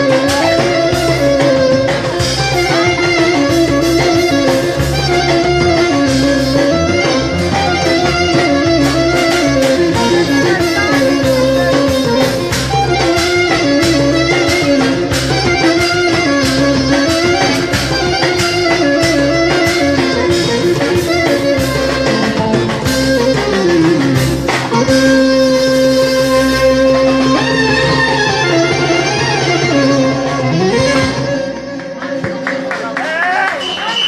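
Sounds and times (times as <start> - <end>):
clarinet melody: 0.0 - 32.3
plucked bouzouki: 0.0 - 32.8
percussion beat: 0.0 - 34.0.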